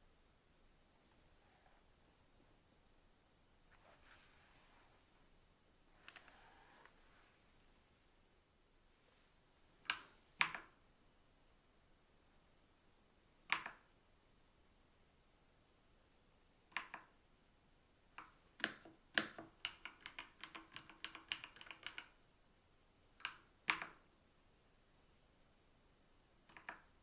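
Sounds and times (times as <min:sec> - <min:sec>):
mechanical keyboard keystrokes: 0:18.6 - 0:22.1.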